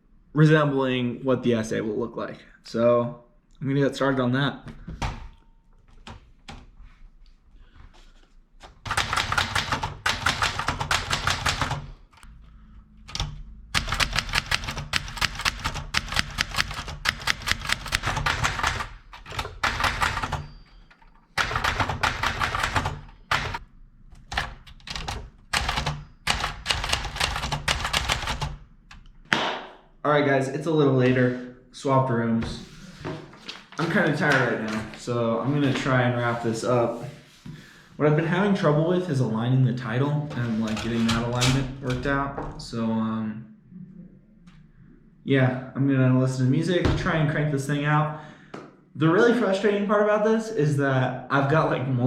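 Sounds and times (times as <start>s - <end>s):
typewriter keys clicking: 8.9s - 12.3s, 13.1s - 20.5s, 21.4s - 23.6s, 24.2s - 29.1s.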